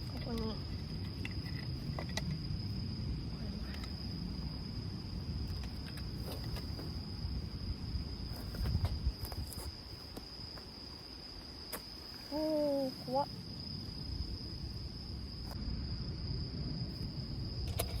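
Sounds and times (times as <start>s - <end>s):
wind buffeting microphone: 0.0s - 9.8s
crickets chirring: 0.0s - 18.0s.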